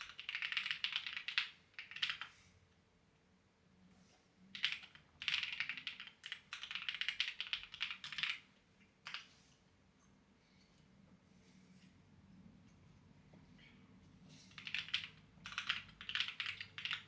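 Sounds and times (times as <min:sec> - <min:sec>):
clacky keyboard typing: 0:00.0 - 0:02.3, 0:04.5 - 0:09.3, 0:14.5 - 0:17.0.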